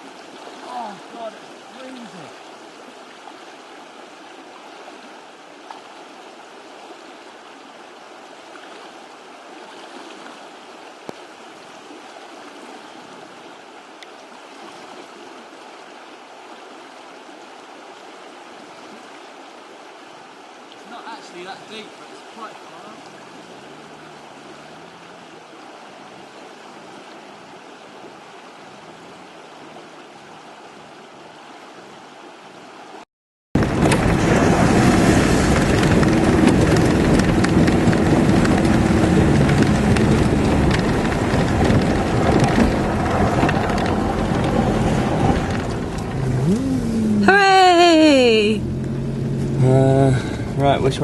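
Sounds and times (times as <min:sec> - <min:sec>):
river flowing: 0:00.0 - 0:33.0, 0:33.6 - 0:51.0
water rushing and splashing: 0:00.0 - 0:51.0
vehicle engine under load: 0:33.6 - 0:47.4, 0:48.1 - 0:51.0.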